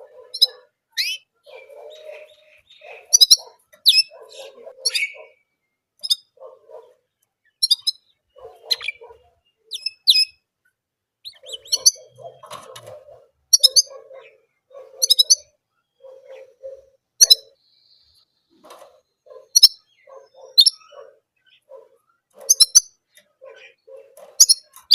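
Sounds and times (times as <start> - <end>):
canary chirping: 0.0 - 10.5, 11.2 - 24.9.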